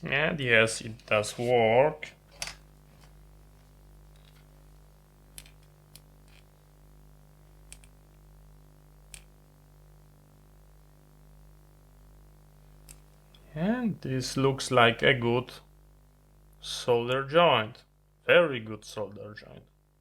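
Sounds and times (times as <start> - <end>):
low electrical hum: 0.0 - 20.0.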